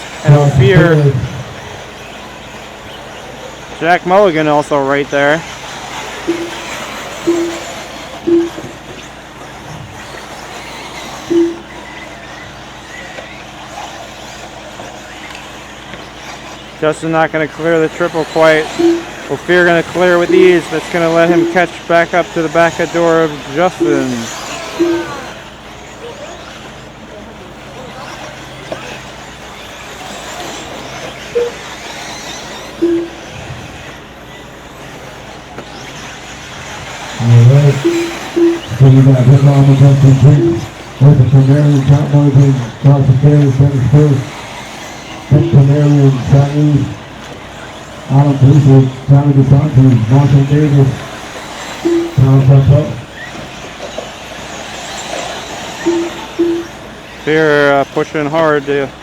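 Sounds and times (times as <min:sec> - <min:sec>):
short tones: 0:00.0 - 0:47.1, 0:47.8 - 0:58.0
electric rc cars racing: 0:00.0 - 0:59.0
high motor whines: 0:00.0 - 0:59.0
short loud beeps: 0:00.2 - 0:01.8, 0:06.2 - 0:08.9, 0:10.0 - 0:12.2, 0:17.4 - 0:25.6, 0:31.4 - 0:33.6, 0:37.2 - 0:44.3, 0:51.8 - 0:53.3, 0:55.8 - 0:56.9.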